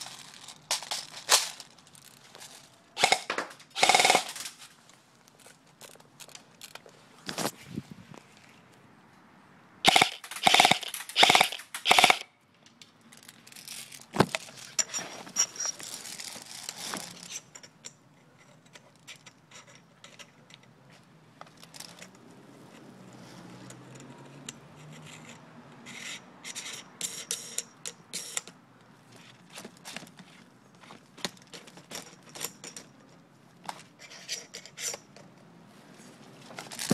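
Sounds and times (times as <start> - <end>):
clicks and rattles of handling: 0.0 - 7.5, 9.9 - 22.9, 27.3 - 35.5
airsoft rifle full-auto bursts: 3.0 - 4.5, 9.9 - 12.3.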